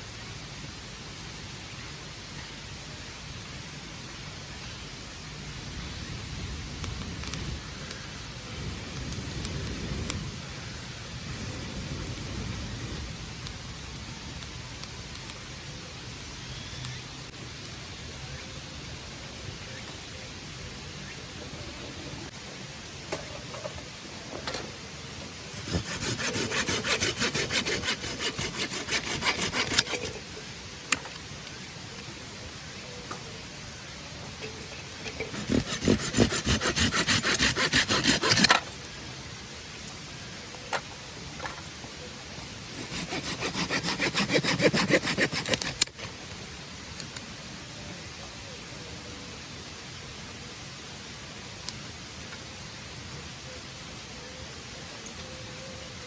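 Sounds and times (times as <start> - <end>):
hand saw cutting wood: 25.5 - 30.2, 35.1 - 38.6, 42.7 - 46.1.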